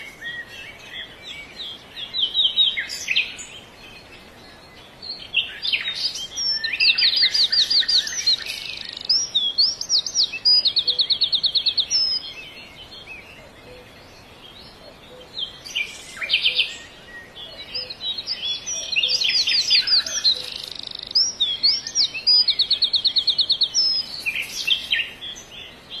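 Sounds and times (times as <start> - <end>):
songbird whistling and trilling: 5.4 - 12.7, 15.2 - 25.5.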